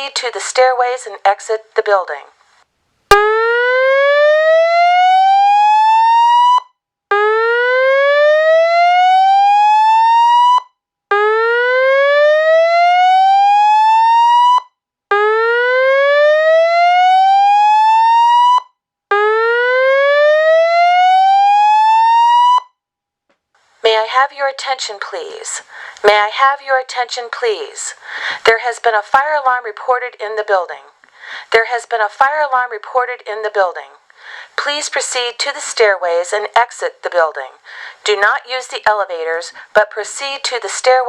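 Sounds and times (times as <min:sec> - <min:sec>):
fire alarm whoop tone: 0:03.1 - 0:22.8.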